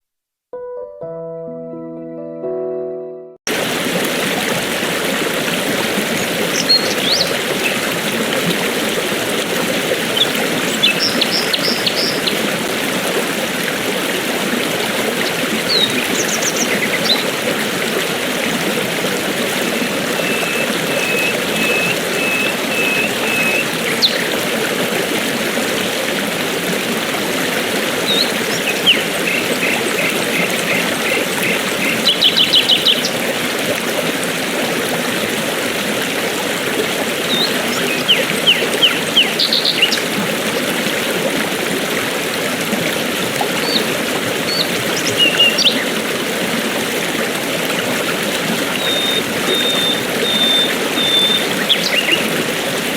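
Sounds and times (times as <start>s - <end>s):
river water flowing: 3.5s - 52.9s
birds chirping: 19.7s - 24.3s, 28.1s - 33.2s, 37.3s - 40.1s, 48.8s - 52.3s.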